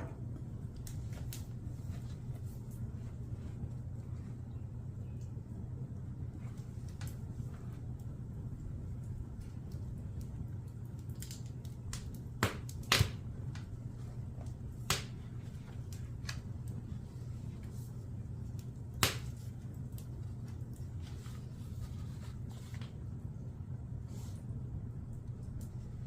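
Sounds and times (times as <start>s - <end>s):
wood fire crackling: 0.0s - 26.0s
sharp pops and snaps of fire: 0.2s - 4.3s, 5.1s - 21.8s, 25.0s - 26.0s.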